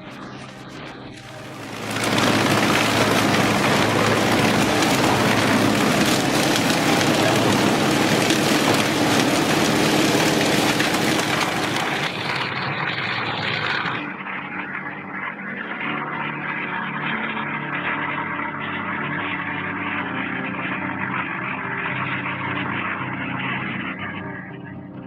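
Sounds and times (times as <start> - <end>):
wood chipper grinding: 1.2 - 14.0.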